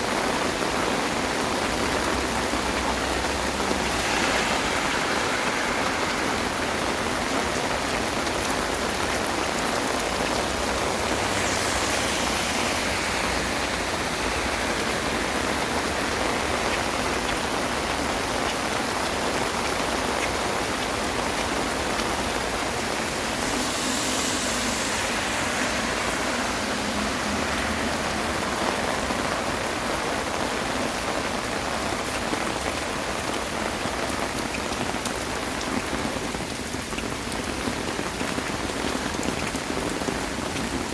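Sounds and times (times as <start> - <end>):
heavy rain on surfaces: 0.0 - 40.9.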